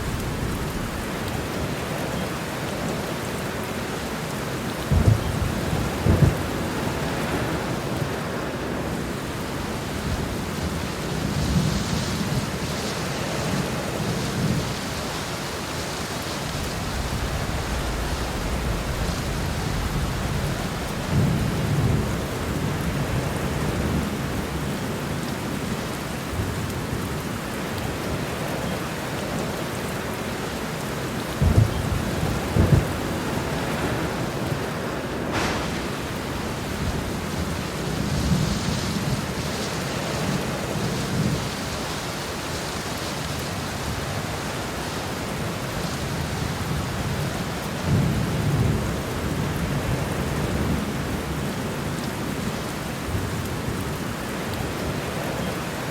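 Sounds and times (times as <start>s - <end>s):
thunder cracks: 0.0s - 2.5s, 4.9s - 8.0s, 16.5s - 23.3s, 31.4s - 41.3s
thunder rumbling: 0.0s - 25.2s, 31.2s - 42.8s
heavy rain falling: 0.0s - 55.9s.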